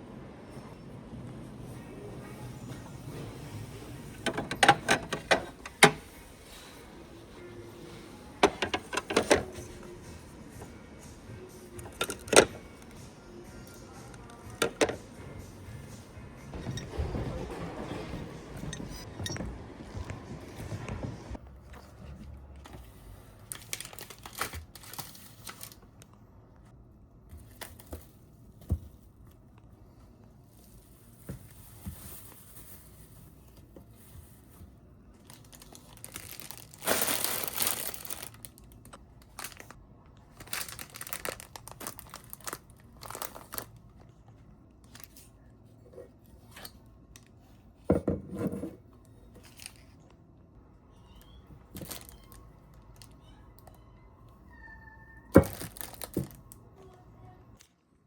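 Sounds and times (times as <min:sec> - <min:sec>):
packaging crinkling and tearing: 0:23.4 - 0:26.1, 0:35.2 - 0:43.9, 0:51.8 - 0:53.2, 0:55.4 - 0:56.6.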